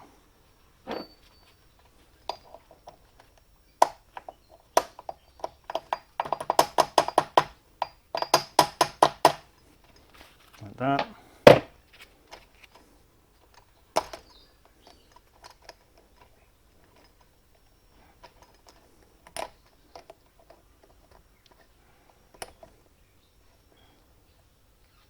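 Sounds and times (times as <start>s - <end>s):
metal parts clicking and knocking: 0.9s - 10.2s, 13.4s - 22.8s.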